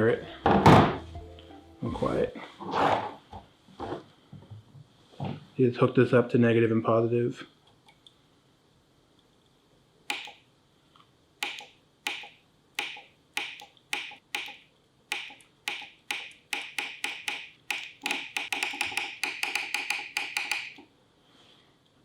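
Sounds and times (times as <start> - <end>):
solenoid valve clicking: 10.1 - 10.4, 11.4 - 20.8.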